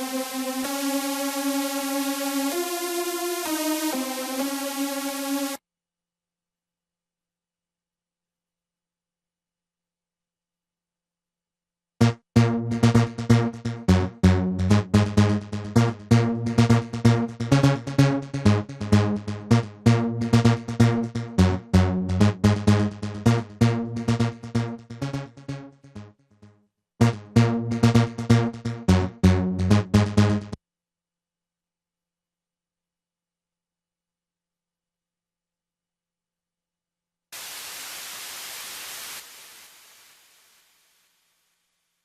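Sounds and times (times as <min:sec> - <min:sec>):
electronic music with drum machine: 0:00.0 - 0:05.6, 0:12.0 - 0:26.1, 0:27.0 - 0:30.6.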